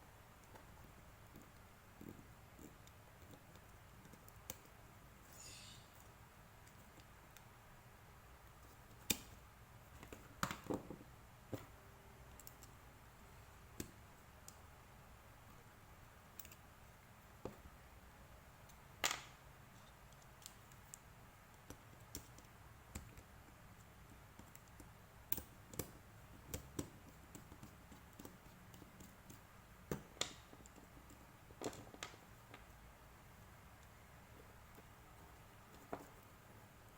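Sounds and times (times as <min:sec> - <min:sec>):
small clicks and taps: 0:00.4 - 0:04.8, 0:08.4 - 0:12.8, 0:13.7 - 0:14.7, 0:16.3 - 0:16.6, 0:18.6 - 0:32.8, 0:33.8 - 0:36.3.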